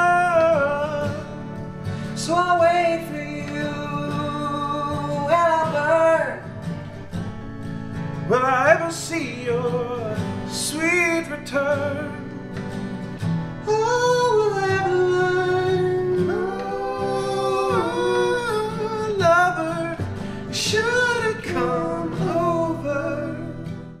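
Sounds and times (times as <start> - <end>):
strummed guitar: 0.0 - 24.0
person singing with vibrato: 13.6 - 23.9.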